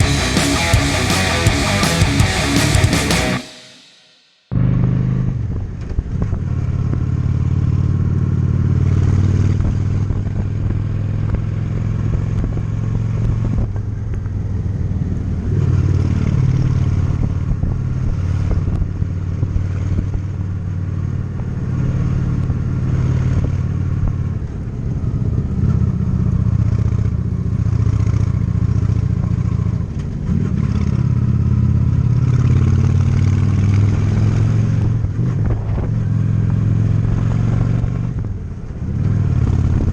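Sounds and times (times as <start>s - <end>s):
motorcycle engine running: 0.0s - 14.9s.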